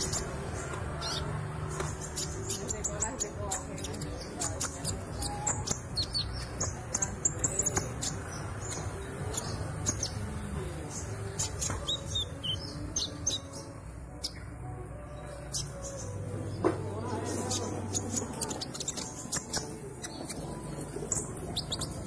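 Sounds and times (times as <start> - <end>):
young bird chirping: 0.0 - 10.3, 17.1 - 22.0.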